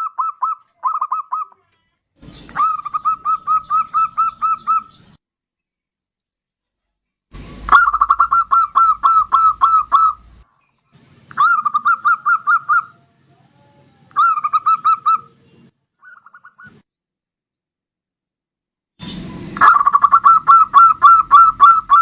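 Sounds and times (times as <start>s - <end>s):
dove cooing: 2.2s - 5.1s, 7.7s - 10.4s, 11.4s - 13.0s, 19.6s - 22.0s.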